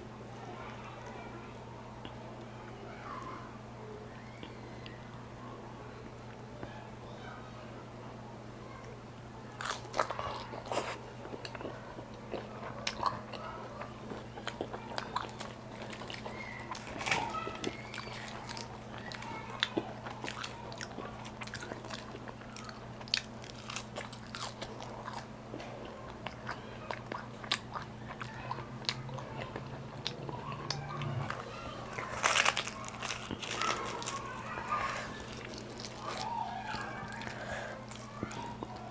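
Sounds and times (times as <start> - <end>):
steady low hum: 0.0 - 38.9
chewing and crunching: 9.5 - 38.9.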